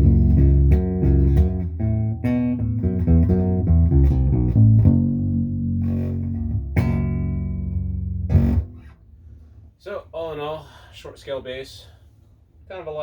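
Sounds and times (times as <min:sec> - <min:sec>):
plucked electric bass notes: 0:00.0 - 0:09.0.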